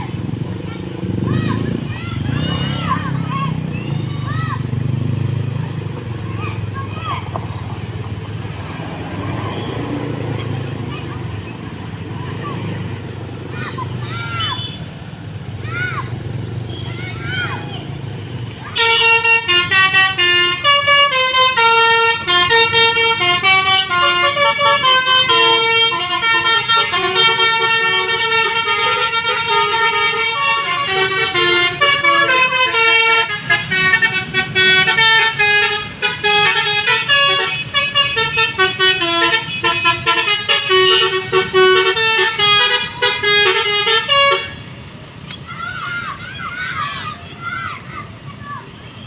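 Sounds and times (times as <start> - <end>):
melody horns playing a tune: 18.8 - 44.6.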